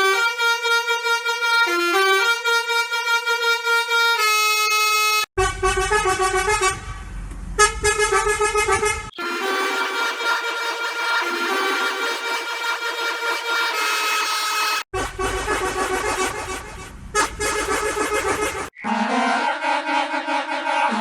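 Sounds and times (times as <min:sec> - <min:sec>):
bus horn tune: 0:00.0 - 0:07.0, 0:07.6 - 0:15.6.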